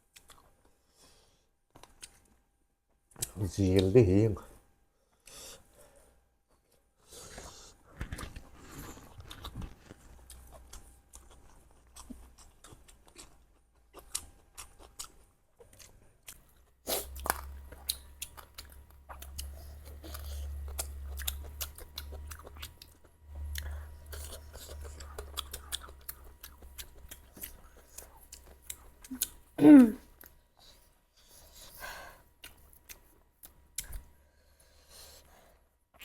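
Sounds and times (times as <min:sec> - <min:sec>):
close chewing and biting: 0:07.3 - 0:34.2.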